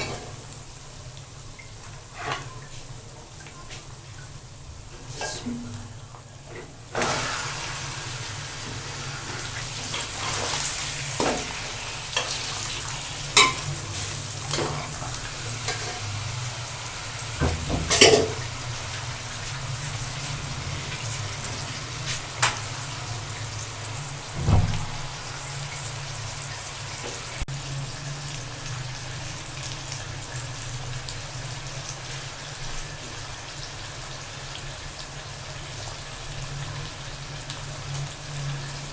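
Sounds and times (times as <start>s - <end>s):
chicken frying in hot oil: 0.0s - 38.9s.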